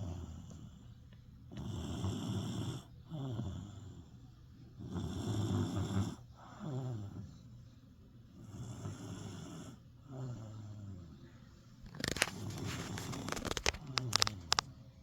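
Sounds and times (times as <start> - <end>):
sharp clicks and rustles: 11.8 - 14.7.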